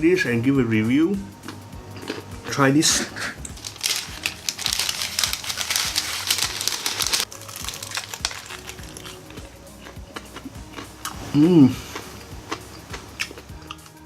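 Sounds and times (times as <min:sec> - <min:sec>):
background music: 0:00.0 - 0:14.0
crunching fried chicken: 0:03.5 - 0:11.8.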